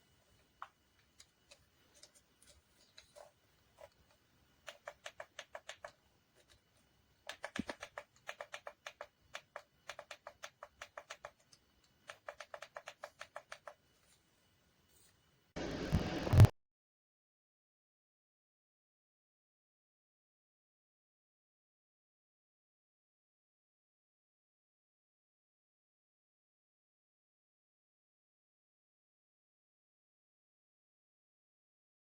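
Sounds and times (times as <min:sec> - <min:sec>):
rapid small clicks: 0:00.4 - 0:14.1.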